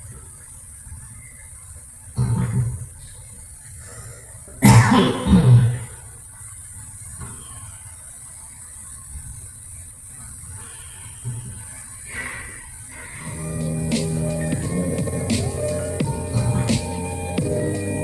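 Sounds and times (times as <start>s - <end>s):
person coughing: 4.6s - 5.9s.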